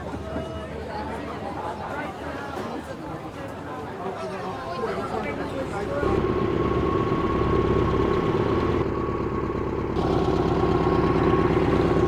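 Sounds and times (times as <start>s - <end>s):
engine running with even pulse: 6.0s - 12.0s.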